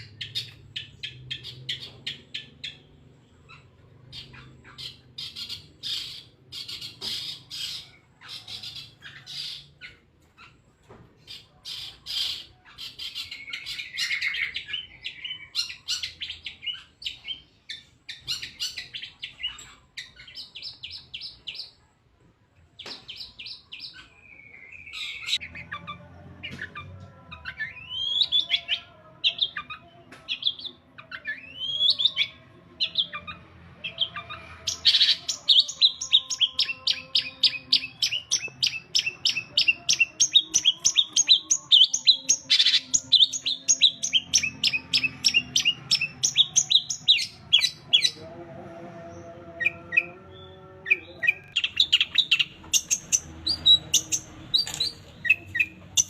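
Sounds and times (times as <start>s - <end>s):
shrike singing: 0.0s - 10.6s, 22.8s - 56.0s.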